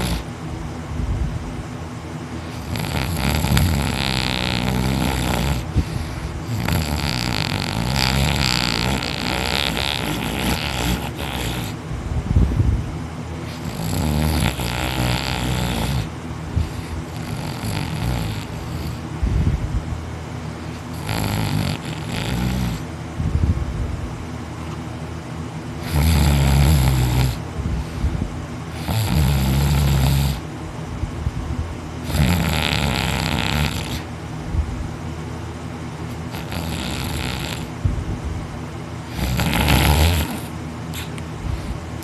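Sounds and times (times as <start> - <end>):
person snoring heavily: 0.0 - 0.3, 2.4 - 11.8, 13.4 - 19.6, 20.6 - 22.9, 25.8 - 30.5, 32.0 - 34.1, 36.1 - 37.9, 39.0 - 42.0.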